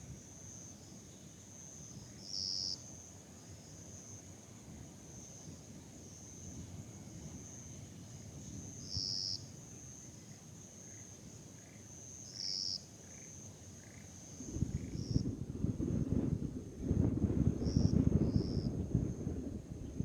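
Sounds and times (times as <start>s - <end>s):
insects trilling: 0.1s - 15.3s
wind buffeting microphone: 14.4s - 20.0s.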